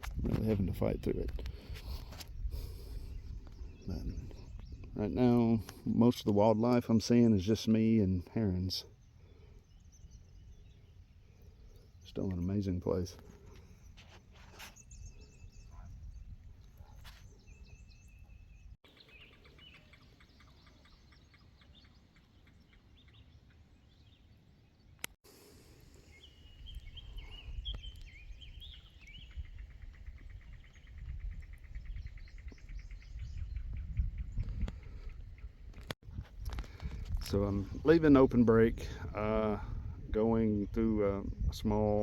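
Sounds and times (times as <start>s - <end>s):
wind rumbling on microphone: 0.0s - 7.6s, 8.3s - 22.2s, 25.8s - 42.0s
birds chirping and calling: 0.3s - 25.0s, 26.0s - 42.0s.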